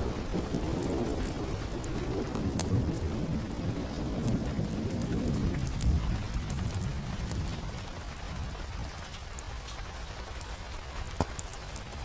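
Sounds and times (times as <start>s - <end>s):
fire crackles: 0.0s - 12.0s
steady rain hiss: 0.0s - 12.0s.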